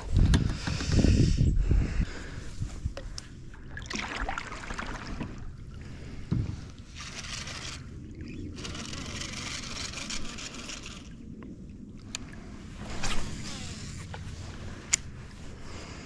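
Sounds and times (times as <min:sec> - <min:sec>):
water sloshing around kayak: 0:03.0 - 0:08.6.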